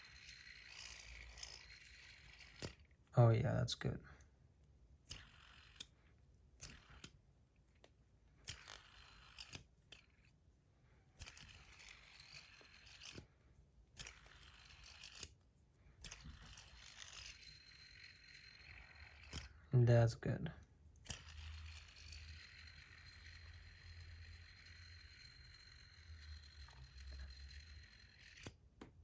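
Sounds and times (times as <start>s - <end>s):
spinner bearing whir: 0.0s - 3.0s, 5.1s - 6.0s, 8.4s - 10.3s, 11.2s - 13.3s, 13.9s - 15.4s, 16.0s - 19.8s, 21.0s - 28.6s.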